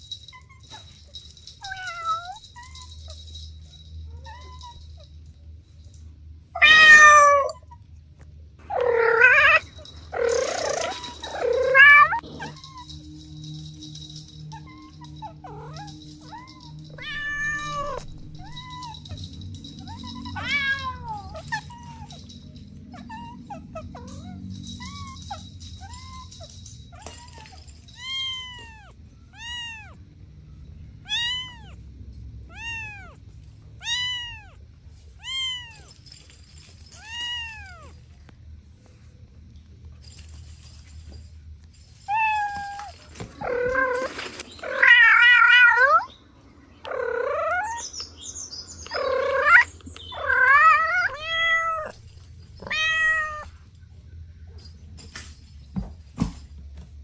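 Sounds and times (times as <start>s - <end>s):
kittens mewing: 6.6s - 7.8s, 8.6s - 12.9s, 14.5s - 30.0s, 31.1s - 31.8s, 32.5s - 33.2s, 33.8s - 34.6s, 48.8s - 53.6s.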